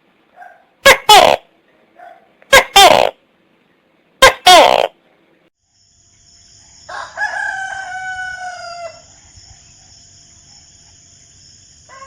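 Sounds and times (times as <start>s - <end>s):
rooster crowing: 6.7s - 9.4s.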